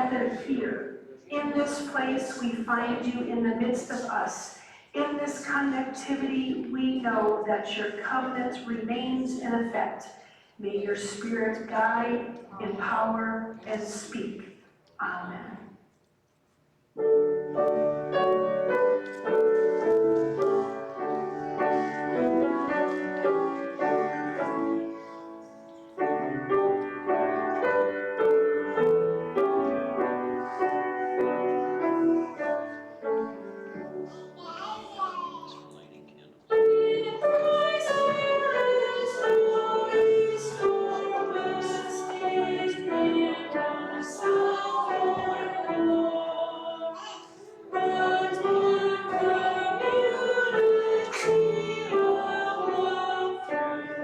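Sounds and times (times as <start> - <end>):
piano playing a hymn tune: 0.0 - 10.1, 17.0 - 35.0, 35.6 - 54.0
voices singing: 36.5 - 54.0.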